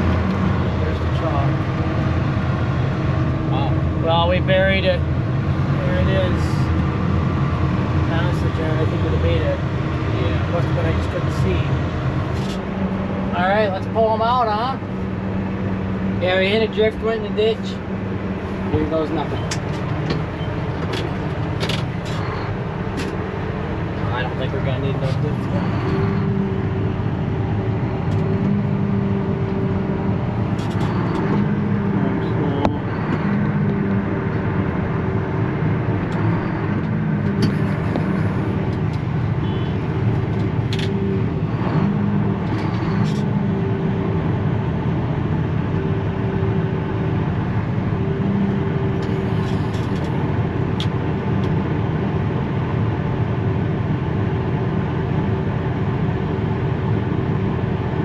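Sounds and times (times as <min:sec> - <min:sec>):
tractor engine under load: 0:18.5 - 0:46.0, 0:46.6 - 0:52.0.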